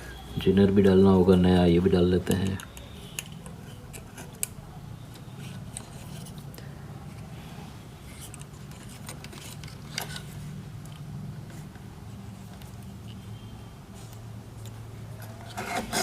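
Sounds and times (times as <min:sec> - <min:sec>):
clicks and scrapes of handling: 0:02.2 - 0:07.3, 0:08.0 - 0:11.8, 0:14.1 - 0:16.0.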